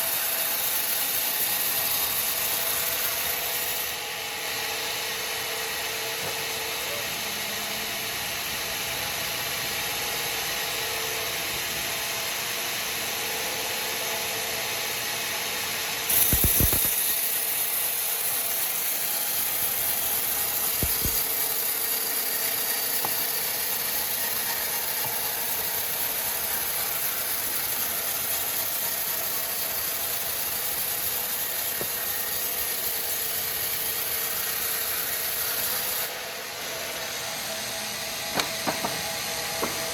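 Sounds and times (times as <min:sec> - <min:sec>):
sawmill machinery running: 0:00.0 - 0:39.9
hissing sound: 0:16.1 - 0:17.2.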